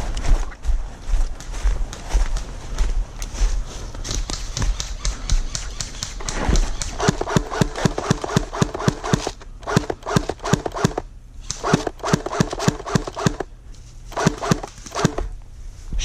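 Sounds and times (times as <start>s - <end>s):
footsteps through undergrowth: 0.0s - 9.4s, 12.9s - 16.0s.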